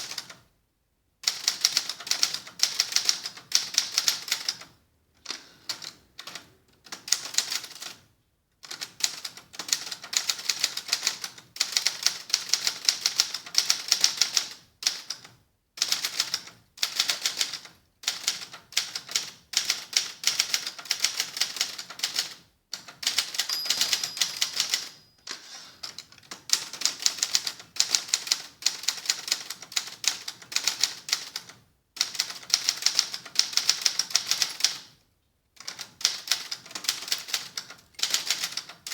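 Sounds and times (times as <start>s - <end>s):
typewriter keystroke clacks: 8.7s - 25.0s, 25.9s - 34.9s, 35.6s - 38.9s
typewriter bell ring: 23.2s - 25.6s.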